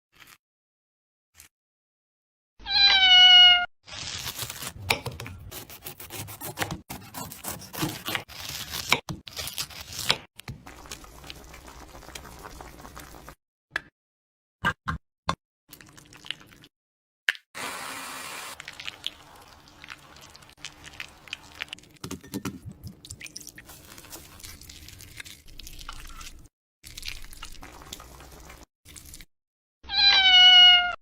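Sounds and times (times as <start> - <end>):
cat meowing: 2.6 - 3.7, 29.9 - 31.0.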